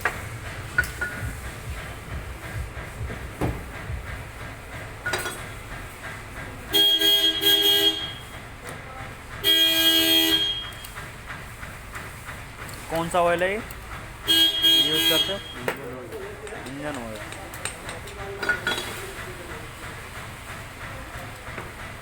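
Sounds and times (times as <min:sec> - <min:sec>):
vehicle horn blasts: 0:06.7 - 0:08.3, 0:09.4 - 0:10.8, 0:14.3 - 0:15.6.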